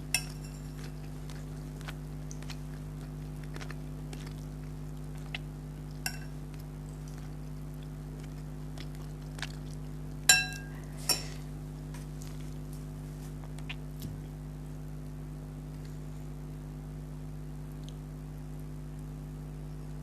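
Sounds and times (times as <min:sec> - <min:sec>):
steady low hum: 0:00.0 - 0:20.0
utensils clinking against a dish: 0:00.1 - 0:00.9, 0:10.3 - 0:11.4.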